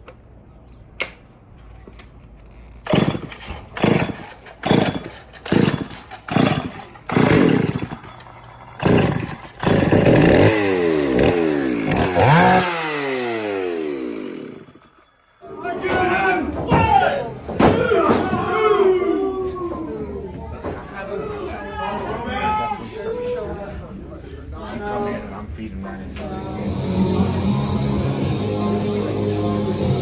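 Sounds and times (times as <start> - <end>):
chainsaw revving: 2.8 - 15.1.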